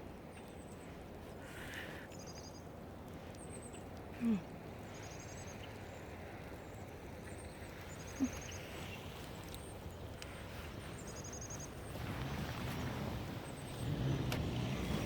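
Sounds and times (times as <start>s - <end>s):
faint outdoor background: 0.0s - 15.0s
songbirds trilling: 4.8s - 12.1s.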